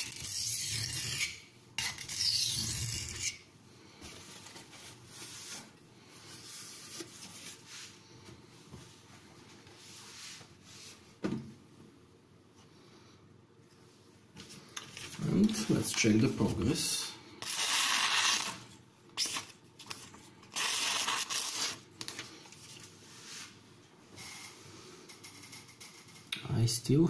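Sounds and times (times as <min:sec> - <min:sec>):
knife scraping on whetstone: 0:00.0 - 0:03.4.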